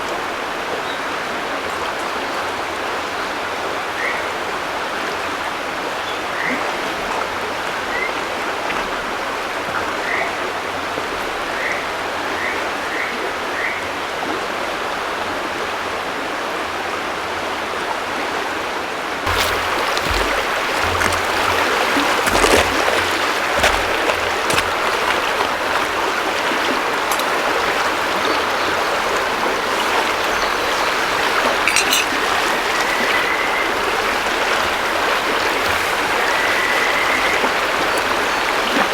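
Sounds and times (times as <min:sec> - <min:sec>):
knocks: 0:19.3 - 0:25.5
river water rushing: 0:19.3 - 0:38.9.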